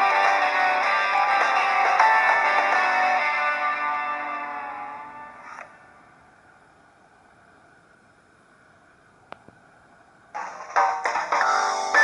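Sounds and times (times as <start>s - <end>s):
ringtone melody: 0.0s - 5.3s, 10.4s - 12.0s.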